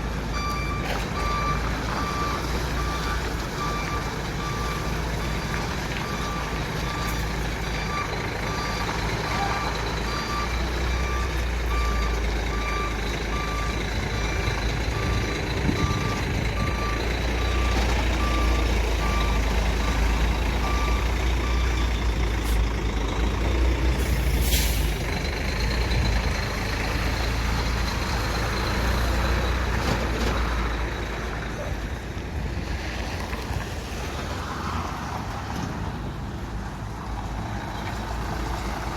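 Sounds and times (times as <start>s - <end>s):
diesel engine running: 0.0s - 32.6s
reversing alarm beeping: 0.3s - 22.6s
air hiss: 24.0s - 25.0s.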